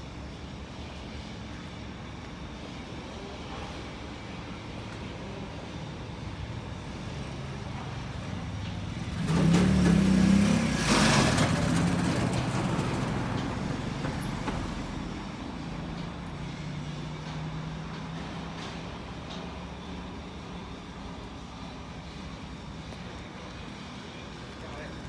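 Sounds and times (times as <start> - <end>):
truck engine revving: 6.0 - 17.1.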